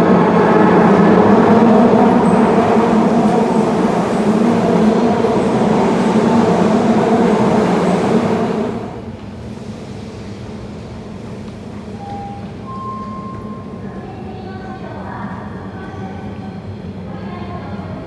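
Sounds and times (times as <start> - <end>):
subway train rumbling: 0.0 - 18.0.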